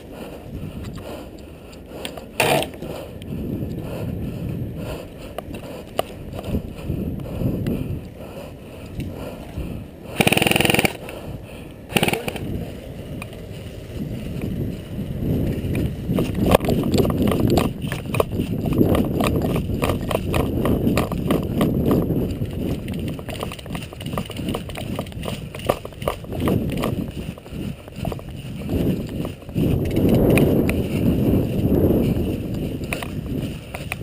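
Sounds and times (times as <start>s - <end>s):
running footsteps: 0.0s - 34.0s
rapid airsoft rifle fire: 10.2s - 11.0s, 11.9s - 12.4s
gear rustling: 11.9s - 34.0s.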